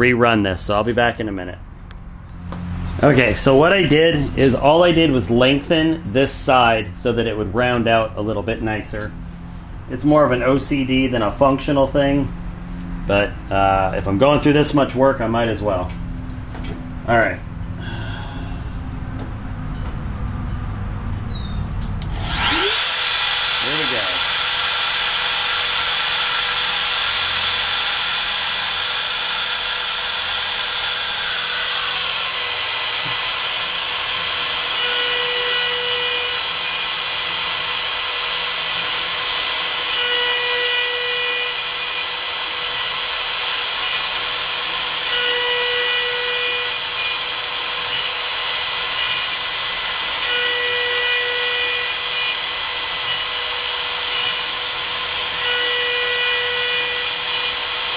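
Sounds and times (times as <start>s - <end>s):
router spindle whining while cutting: 22.0s - 57.9s.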